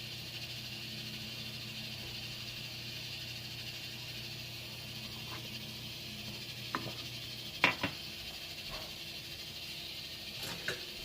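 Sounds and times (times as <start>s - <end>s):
steady hiss: 0.0s - 11.0s
dishes knocking and clattering: 7.6s - 8.0s.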